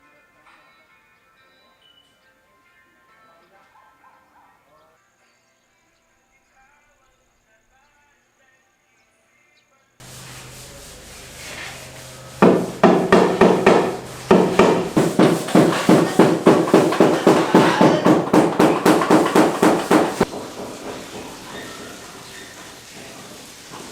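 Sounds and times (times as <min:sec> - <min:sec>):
steady low hum: 0:10.0 - 0:17.4
rapid hammering: 0:10.0 - 0:22.5.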